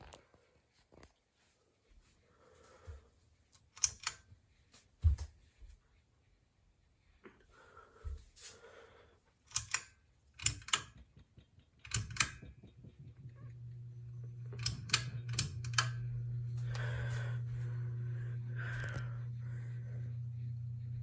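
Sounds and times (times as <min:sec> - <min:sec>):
sharp clicks: 0:03.6 - 0:04.2, 0:09.5 - 0:16.9
ceiling fan motor hum: 0:09.5 - 0:21.0.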